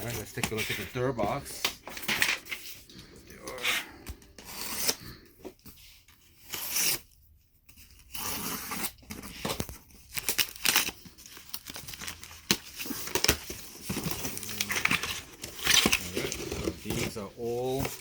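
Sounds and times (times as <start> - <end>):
packing tape tearing: 8.0 - 18.0
packing material crinkling: 9.6 - 18.0.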